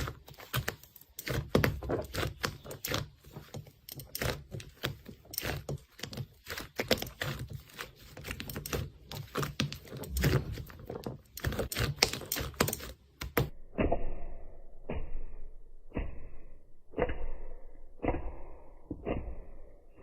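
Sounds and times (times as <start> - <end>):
slime crackling and popping: 0.0 - 3.2, 3.9 - 13.0
slime squishing: 0.0 - 13.5.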